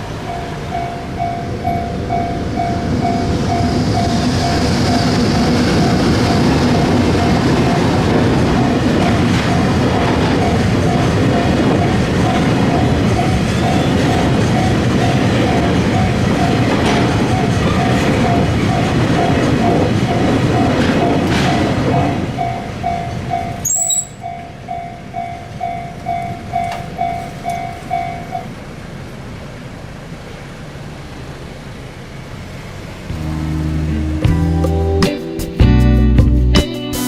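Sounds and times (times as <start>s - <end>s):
railroad crossing bell ringing: 0.0s - 28.7s
train passing: 0.0s - 36.4s.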